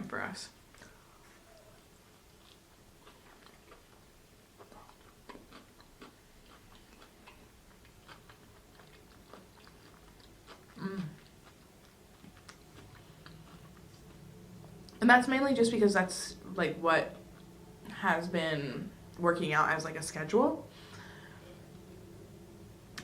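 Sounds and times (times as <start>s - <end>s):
person chewing food: 0.7s - 15.0s, 17.2s - 17.6s.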